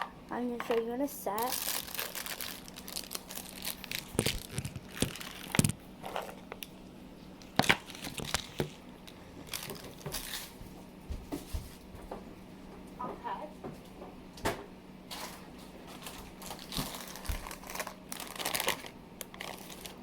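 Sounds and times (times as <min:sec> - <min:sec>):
plastic packaging crinkling: 0:00.7 - 0:06.8, 0:07.4 - 0:10.6, 0:15.1 - 0:20.0.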